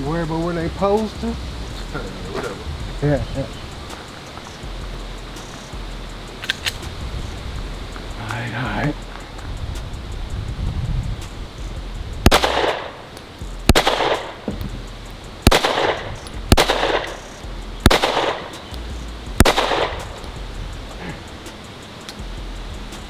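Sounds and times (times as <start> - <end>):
pistol shots with echo: 12.2 - 13.0, 13.7 - 14.6, 15.4 - 18.7, 19.4 - 20.2.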